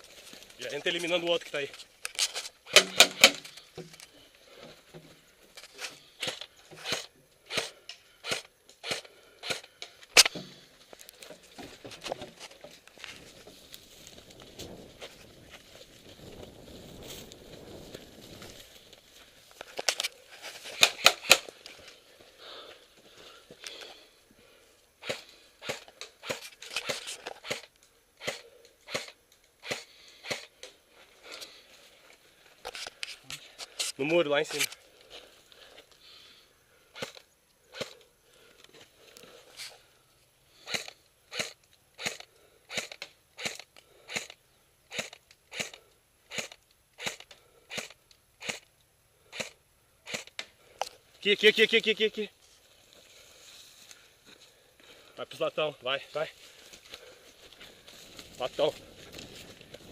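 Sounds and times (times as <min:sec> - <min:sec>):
footsteps crunching on ground: 0:00.0 - 0:02.6, 0:10.6 - 0:24.1, 0:51.0 - 0:59.9
airsoft gun shots: 0:02.7 - 0:03.4.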